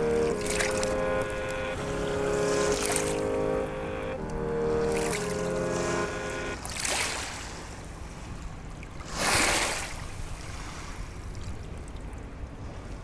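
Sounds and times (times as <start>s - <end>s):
sea waves washing in: 0.0s - 7.6s.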